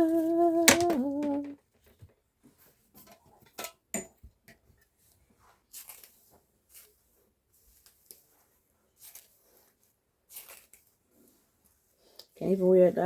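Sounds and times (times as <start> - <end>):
woman singing a held note: 0.0 - 1.6.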